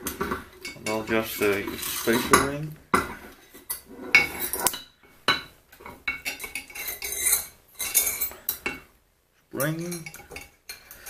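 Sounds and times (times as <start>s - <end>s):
small metal parts clinking and scraping: 0.1s - 2.6s, 6.1s - 8.7s.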